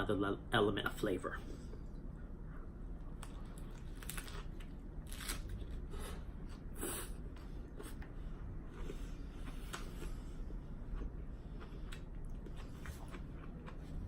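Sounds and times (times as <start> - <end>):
lettuce crunching while chewed: 3.2 - 6.6.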